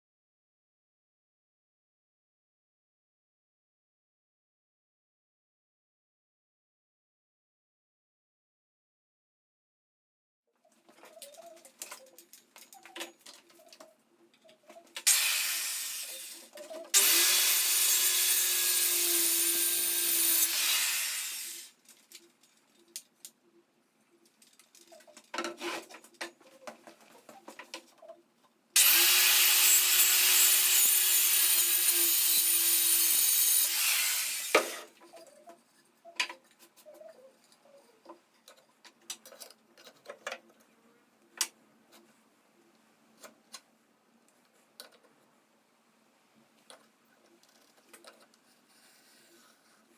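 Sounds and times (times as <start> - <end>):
power tool cutting wood: 15.1 - 21.7, 28.8 - 34.9.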